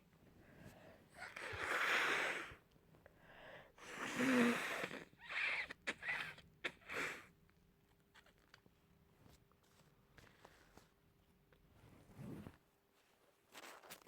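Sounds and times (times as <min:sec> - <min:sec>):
person blowing nose: 0:01.2 - 0:02.6, 0:03.8 - 0:07.3.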